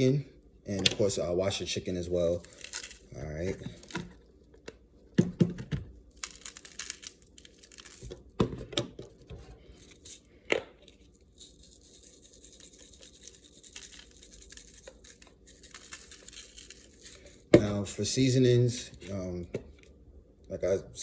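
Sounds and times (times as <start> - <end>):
scratchy rustling: 11.0 - 17.5.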